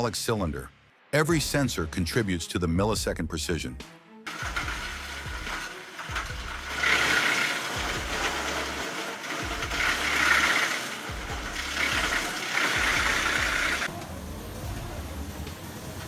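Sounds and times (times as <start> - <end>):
shredding machinery grinding: 4.3 - 16.0.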